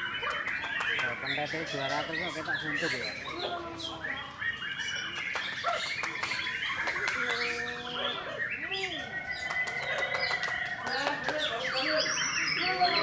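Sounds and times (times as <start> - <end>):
bird singing whistles: 11.6 - 13.0.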